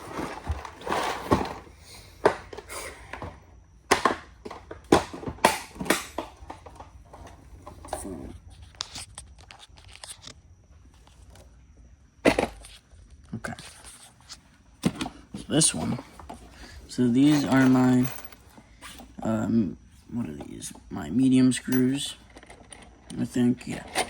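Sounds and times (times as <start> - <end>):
parts rattling: 0.0 - 10.3, 12.2 - 19.5, 20.1 - 24.0
plastic organizer clicks and knocks: 3.9 - 7.3.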